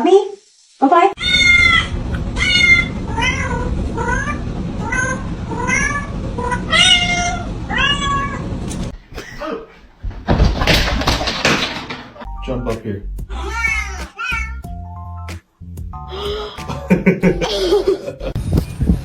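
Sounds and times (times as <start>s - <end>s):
cat meowing: 1.2s - 8.4s, 13.3s - 14.6s
low rumble: 1.2s - 9.0s.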